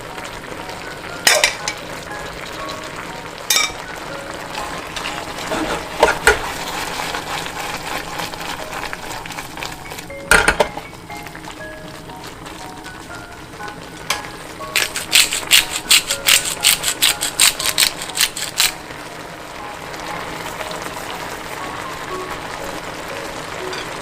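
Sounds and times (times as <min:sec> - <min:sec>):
food sizzling in a frying pan: 0:00.0 - 0:24.0
soft background music: 0:00.0 - 0:24.0
utensil clattering against pan: 0:01.2 - 0:01.8, 0:03.5 - 0:03.8, 0:04.9 - 0:06.7.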